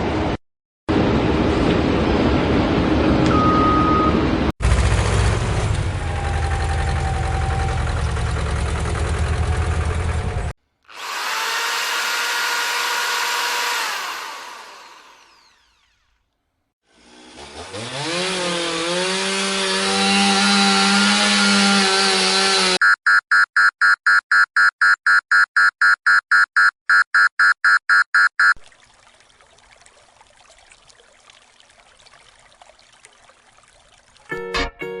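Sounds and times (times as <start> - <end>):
motor spinning up whine: 10.9 - 16.2.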